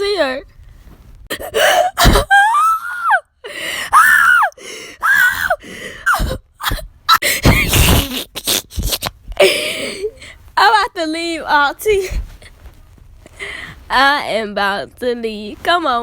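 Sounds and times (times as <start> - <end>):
person shrieking and squealing: 1.5 - 3.2, 3.9 - 9.1.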